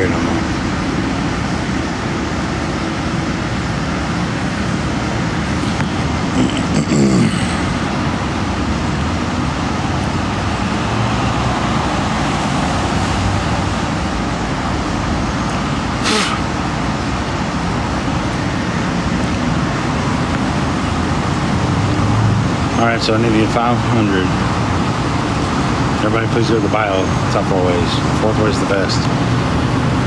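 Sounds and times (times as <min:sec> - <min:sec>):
road traffic noise: 0:00.0 - 0:30.0
brief hiss: 0:16.0 - 0:16.5.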